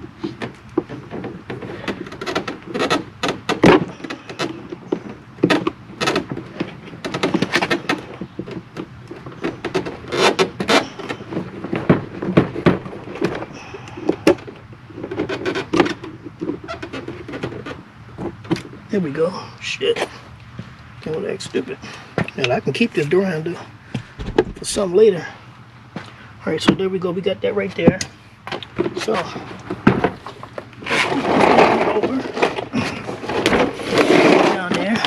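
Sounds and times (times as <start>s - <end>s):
plastic door handle clicking and knocking: 24.2s - 24.8s.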